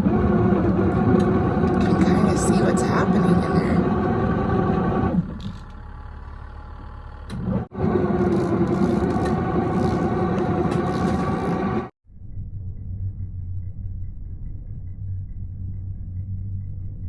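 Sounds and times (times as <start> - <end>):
washing machine motor hum: 0.0 - 11.9.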